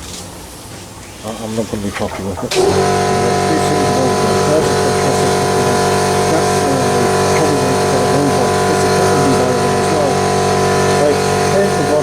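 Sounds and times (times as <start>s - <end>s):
air compressor humming: 0.0s - 12.0s.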